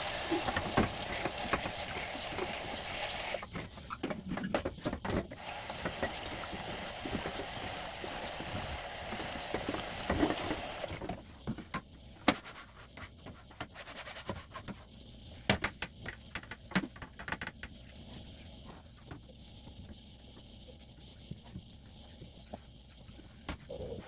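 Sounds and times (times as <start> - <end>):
water running from a tap: 0.0 - 3.6, 5.3 - 11.0.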